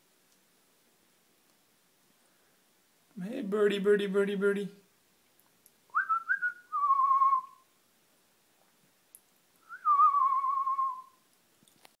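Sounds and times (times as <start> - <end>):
long wavering whistles: 5.9 - 7.7, 9.6 - 11.2.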